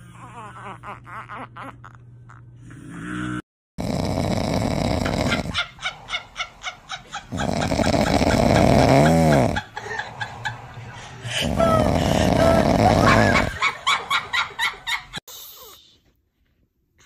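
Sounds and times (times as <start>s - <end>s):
person snoring: 2.6s - 5.6s, 7.2s - 13.6s.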